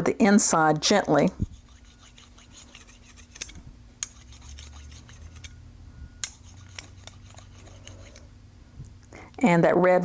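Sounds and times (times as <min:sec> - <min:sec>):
blade rubbed on sharpening stone: 0:01.4 - 0:05.6, 0:06.2 - 0:08.3.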